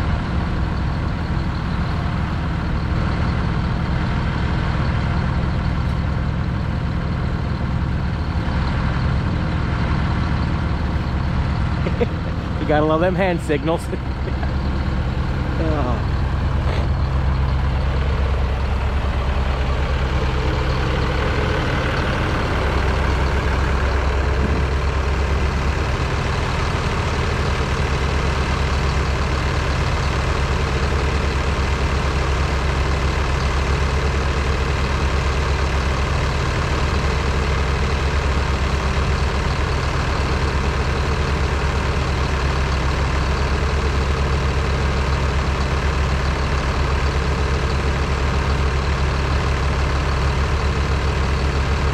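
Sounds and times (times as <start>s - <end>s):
heavy engine idling: 0.0s - 51.9s.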